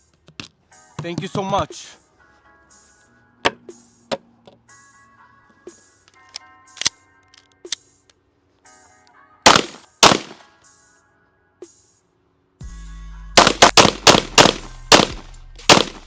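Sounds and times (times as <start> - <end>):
gunshots: 9.5 - 10.5, 13.4 - 16.0.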